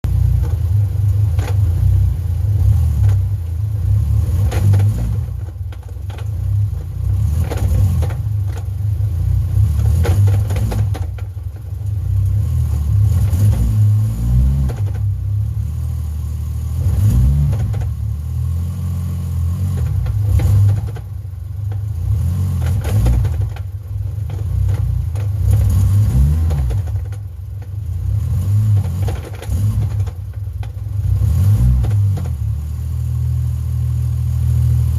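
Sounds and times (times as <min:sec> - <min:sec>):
car engine revving: 0:00.1 - 0:34.9
gearbox rattle: 0:09.8 - 0:11.9, 0:19.7 - 0:21.9, 0:22.6 - 0:27.8, 0:28.7 - 0:30.9.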